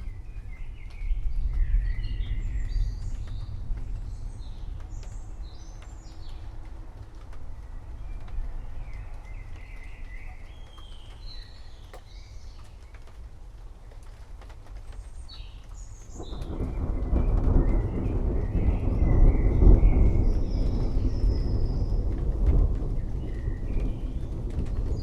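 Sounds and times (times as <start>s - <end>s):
rain: 0.0s - 25.0s
drip-like ticks: 2.6s - 17.6s
birds chirping and singing: 8.9s - 12.9s
distant thunder rolling: 16.0s - 25.0s.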